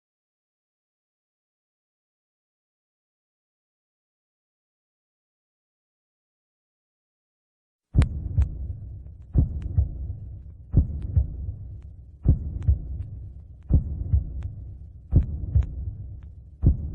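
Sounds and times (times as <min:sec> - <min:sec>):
deep heartbeat-like thumps: 0:08.0 - 0:16.9
steady low rumble: 0:08.0 - 0:16.9.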